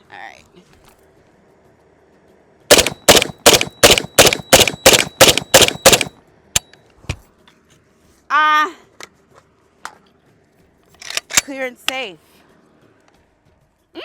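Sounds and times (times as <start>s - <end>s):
pistol shots: 2.7s - 6.1s.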